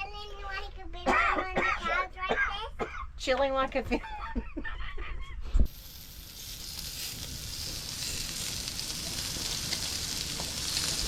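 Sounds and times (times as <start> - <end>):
meat sizzling on a hotplate: 5.7 - 11.0.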